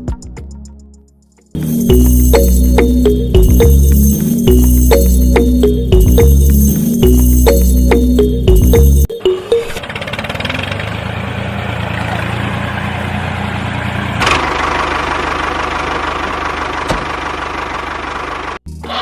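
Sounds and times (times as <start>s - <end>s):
engine idling: 9.7s - 19.0s.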